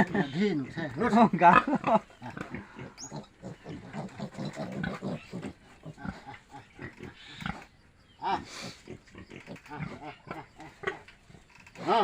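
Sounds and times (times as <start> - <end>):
pigs grunting: 0.0 - 12.0.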